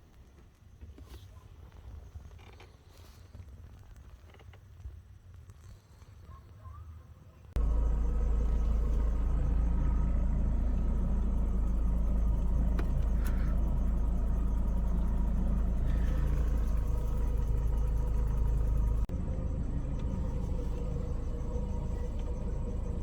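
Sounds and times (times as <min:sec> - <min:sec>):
car engine idling: 0:07.6 - 0:23.0.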